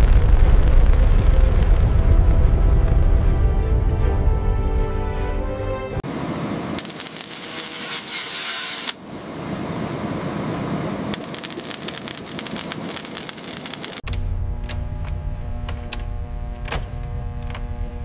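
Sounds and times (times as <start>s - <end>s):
rocket launch hiss and crackling: 0.0s - 2.2s, 11.1s - 14.0s
music: 0.3s - 6.0s.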